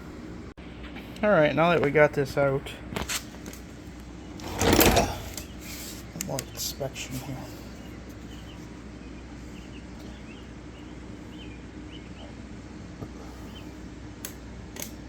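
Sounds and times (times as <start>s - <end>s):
steady low hum: 0.0s - 15.0s
small bird chirping: 5.4s - 12.5s.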